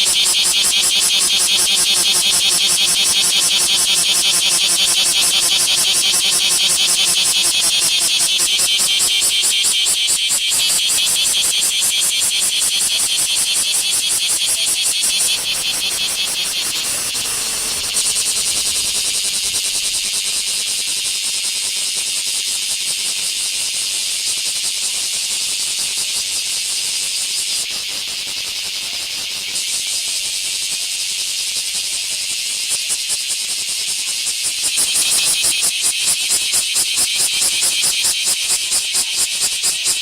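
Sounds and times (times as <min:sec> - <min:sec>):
cicadas buzzing: 0:00.0 - 0:40.0.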